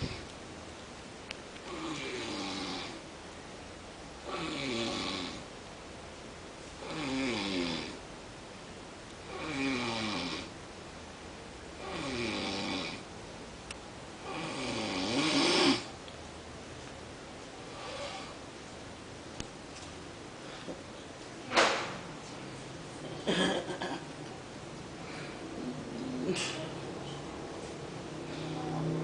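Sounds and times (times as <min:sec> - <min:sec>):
man snoring: 0:01.6 - 0:03.0, 0:04.2 - 0:05.5, 0:06.8 - 0:08.0, 0:09.3 - 0:10.5, 0:11.8 - 0:13.1, 0:14.2 - 0:15.9, 0:17.7 - 0:18.4.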